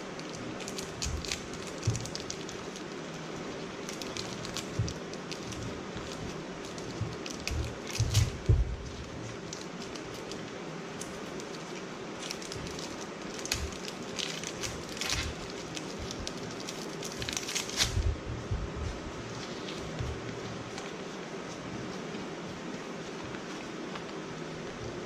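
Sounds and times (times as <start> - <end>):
candy wrappers crinkling: 0.0 - 18.0
steady low hum: 0.0 - 25.0.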